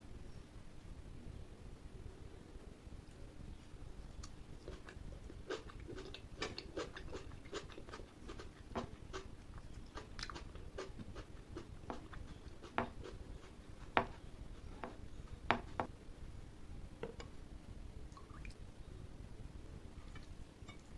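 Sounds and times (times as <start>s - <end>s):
wet mouth clicks while chewing: 4.2s - 14.0s.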